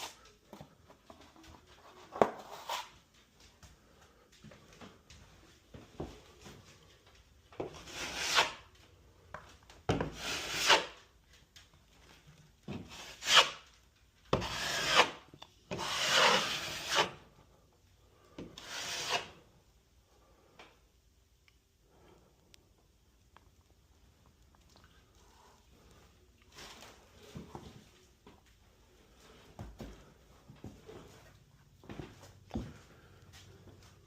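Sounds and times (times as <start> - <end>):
utility knife scraping drywall: 7.7 - 8.7, 9.9 - 11.0, 12.8 - 13.7, 14.3 - 17.3, 18.4 - 19.4.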